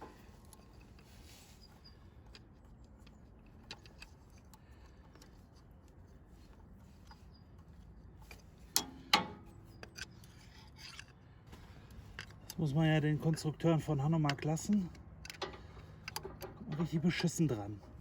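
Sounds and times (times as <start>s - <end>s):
metallic clicks of tools: 14.2s - 17.4s.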